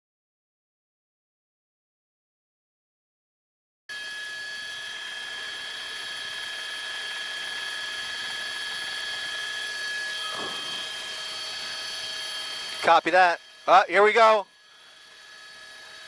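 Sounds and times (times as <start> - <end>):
mechanical whirring with high whine: 3.9 - 16.0.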